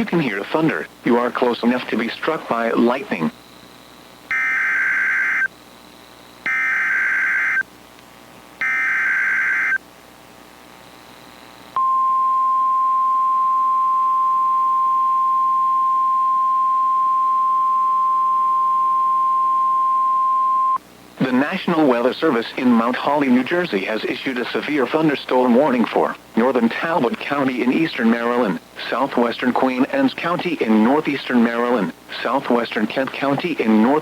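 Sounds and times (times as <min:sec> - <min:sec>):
buzzy digital data bursts: 0:01.2 - 0:07.6, 0:08.6 - 0:09.8
steady warning alarm tone: 0:04.3 - 0:05.5, 0:06.4 - 0:07.6, 0:08.6 - 0:09.8.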